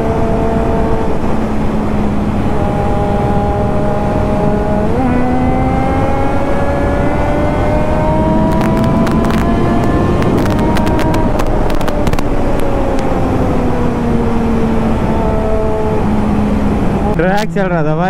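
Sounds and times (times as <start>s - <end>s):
motorcycle engine revving: 0.0s - 17.4s
steady rushing noise: 0.0s - 18.0s
sharp ticks: 8.5s - 13.1s.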